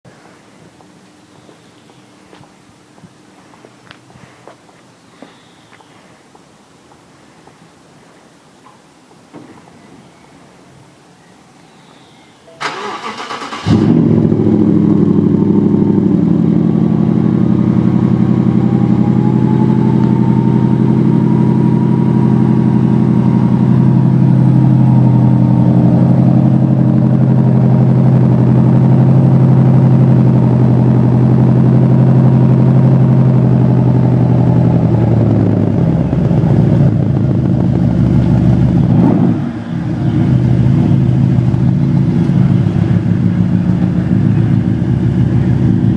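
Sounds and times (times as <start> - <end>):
car engine starting and idling: 12.6 - 45.9.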